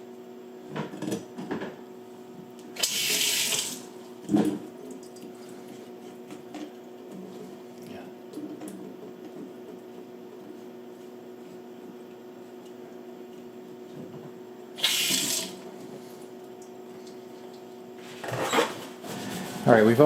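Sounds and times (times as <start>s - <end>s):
water running from faucet: 2.8s - 3.9s, 14.8s - 15.6s.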